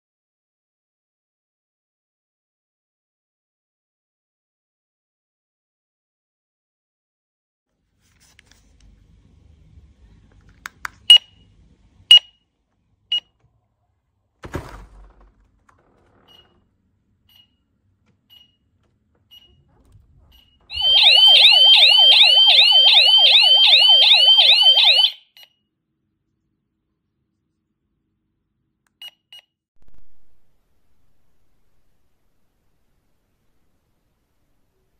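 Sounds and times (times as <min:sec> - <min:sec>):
alarm system beeping: 0:20.4 - 0:25.4
warbling alarm siren: 0:20.7 - 0:25.3.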